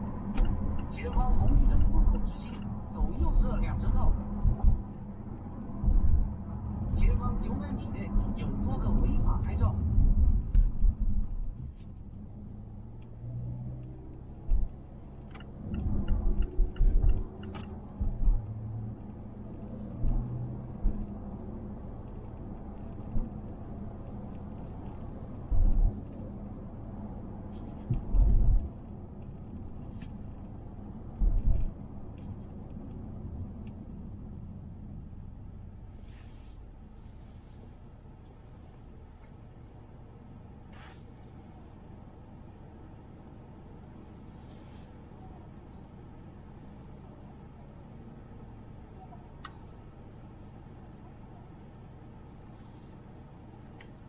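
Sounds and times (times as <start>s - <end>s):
road rumble inside car: 0.0s - 54.0s
light interior rattle ticks: 0.1s - 4.9s, 8.0s - 26.4s
heavy low thumps: 4.3s - 4.9s
faint light ticks: 49.4s - 49.7s, 53.7s - 54.0s.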